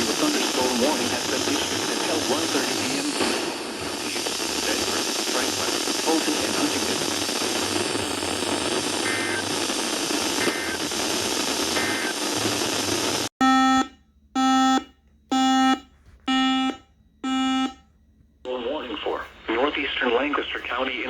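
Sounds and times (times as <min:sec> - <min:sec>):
radio hiss: 0:00.0 - 0:13.3, 0:18.5 - 0:21.0
faint data header bursts: 0:00.0 - 0:17.8
electronic alert beeps: 0:13.4 - 0:17.8.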